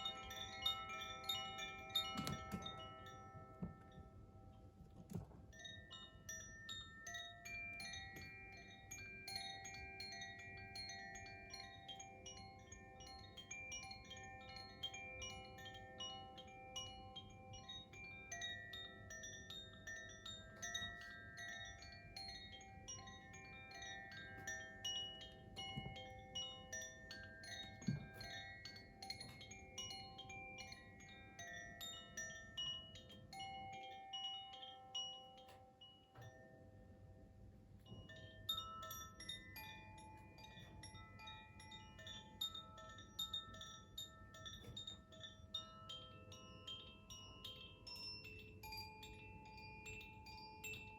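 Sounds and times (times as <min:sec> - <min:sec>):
wind chime tinkling: 0:00.0 - 0:50.9.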